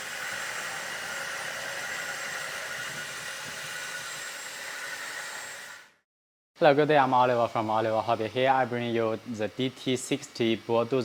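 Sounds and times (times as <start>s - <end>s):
model bulldozer mechanical whir: 0.0s - 6.0s.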